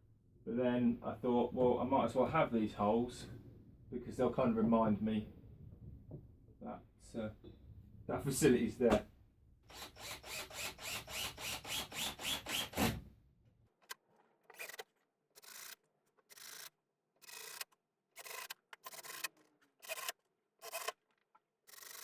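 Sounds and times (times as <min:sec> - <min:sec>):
hand tool rasping on wood: 0:09.7 - 0:13.0.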